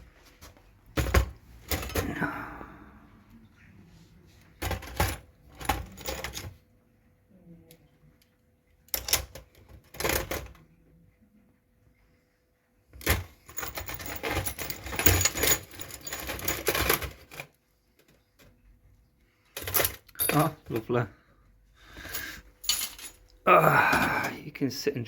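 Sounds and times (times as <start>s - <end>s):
metal bicycle parts clinking: 19.6s - 21.0s, 22.0s - 23.3s.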